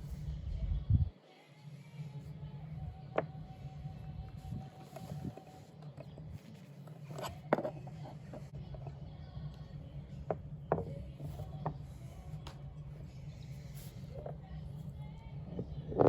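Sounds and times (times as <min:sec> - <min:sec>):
low hum: 0:00.0 - 0:01.1.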